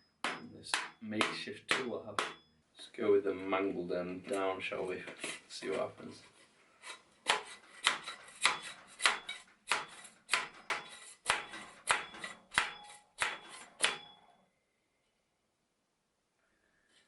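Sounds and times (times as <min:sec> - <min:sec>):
rubber mallet knocking: 0:00.2 - 0:02.4.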